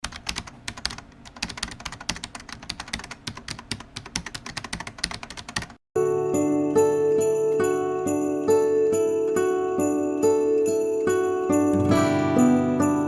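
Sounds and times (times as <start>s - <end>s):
rapid keyboard typing: 0.0s - 5.8s
music with bell-like tones: 6.0s - 13.0s.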